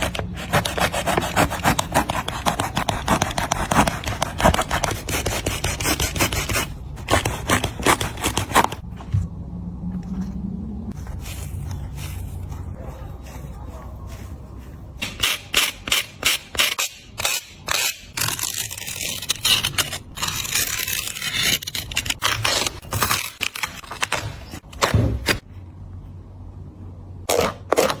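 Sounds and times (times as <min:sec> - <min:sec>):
shoe material scraping: 0:10.9 - 0:16.7.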